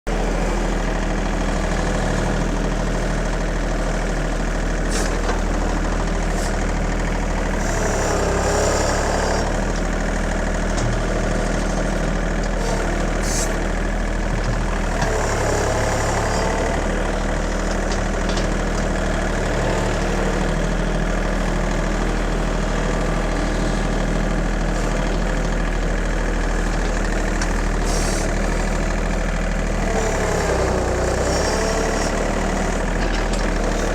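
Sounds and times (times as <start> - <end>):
tractor diesel engine running: 0.0 - 33.9.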